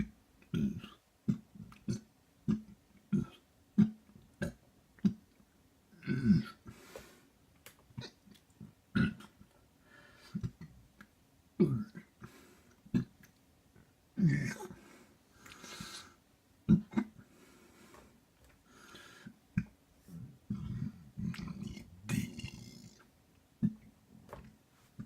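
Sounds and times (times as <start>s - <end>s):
person burping: 0.0s - 5.2s, 6.0s - 6.7s, 8.9s - 9.4s, 11.6s - 12.1s, 14.2s - 14.8s, 16.7s - 17.2s, 19.6s - 23.8s
breathy sounds: 14.3s - 16.2s, 16.8s - 23.1s.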